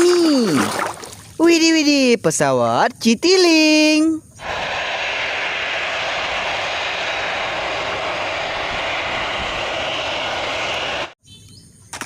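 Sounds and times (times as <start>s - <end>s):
jet engine rushing: 4.4s - 11.2s.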